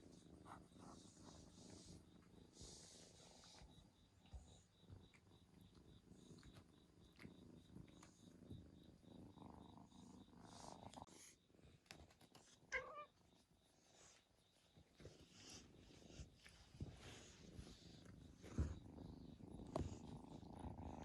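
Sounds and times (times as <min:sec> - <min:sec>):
cat purring: 0:00.0 - 0:21.0
cat meowing: 0:12.7 - 0:13.2.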